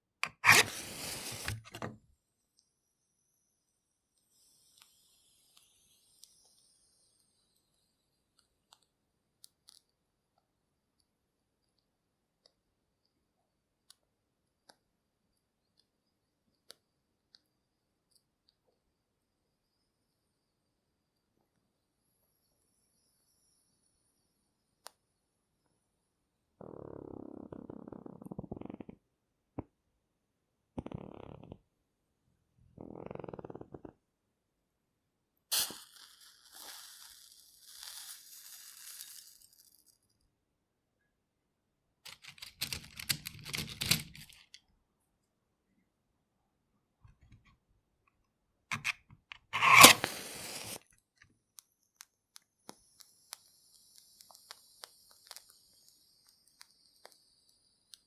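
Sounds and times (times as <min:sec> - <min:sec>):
faint match clicks and crackles: 0:00.2 - 0:01.9, 0:35.5 - 0:40.2, 0:48.7 - 0:50.8, 0:51.6 - 0:58.0.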